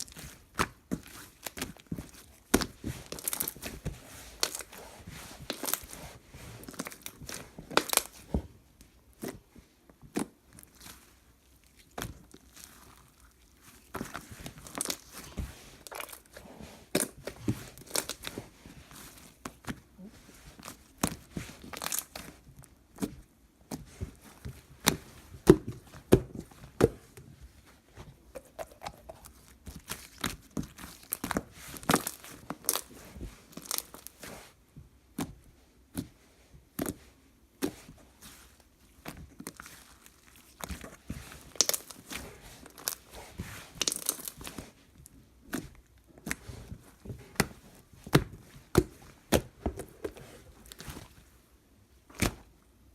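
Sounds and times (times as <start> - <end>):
material crinkling and tearing: 10.2 - 22.7, 28.3 - 34.2, 38.5 - 51.2.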